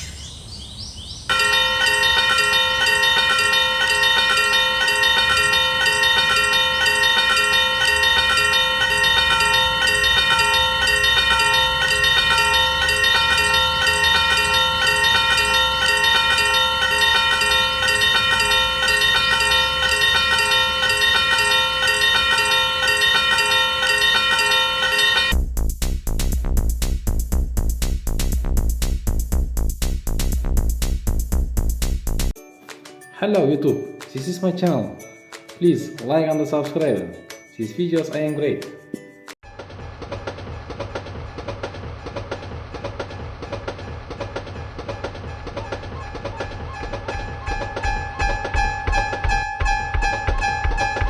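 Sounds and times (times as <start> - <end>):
level crossing warning bell ringing: 1.3 - 25.4, 32.4 - 39.3, 46.5 - 51.0.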